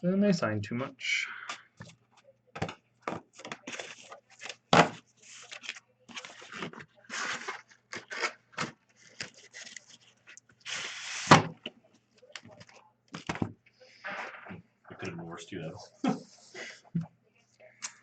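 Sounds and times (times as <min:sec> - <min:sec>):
cardboard and plastic rustling: 0:02.6 - 0:13.5.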